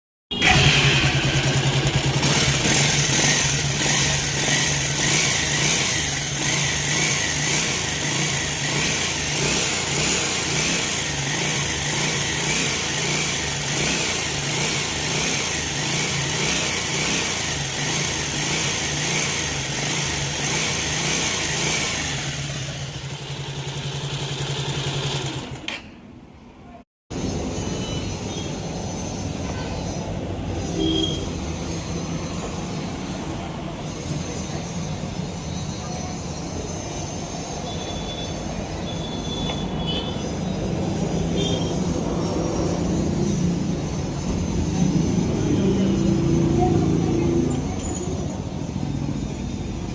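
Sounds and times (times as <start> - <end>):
motorcycle engine running: 0.3 - 25.7.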